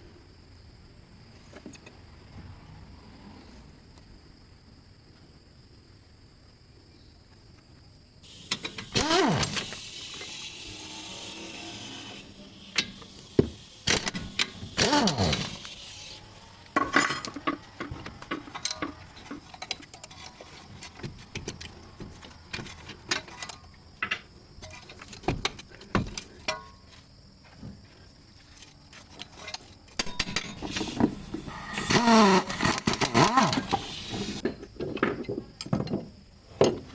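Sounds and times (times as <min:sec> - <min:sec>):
metallic clinks and knocks: 0:16.7 - 0:27.0, 0:28.6 - 0:31.8.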